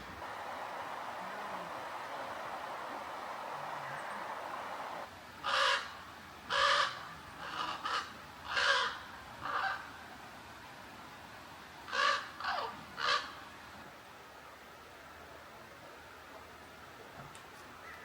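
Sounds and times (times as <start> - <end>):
steady rushing hiss: 0.0 - 18.0
crows cawing: 5.4 - 5.9, 6.5 - 9.9, 11.9 - 13.4.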